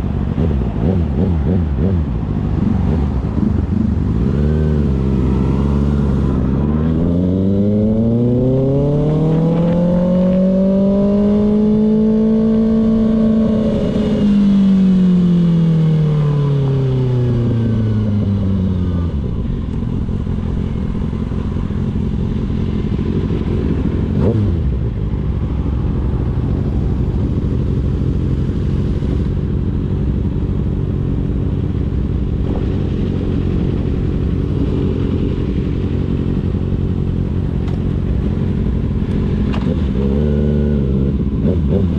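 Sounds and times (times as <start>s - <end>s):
motorcycle engine revving: 0.0s - 41.9s.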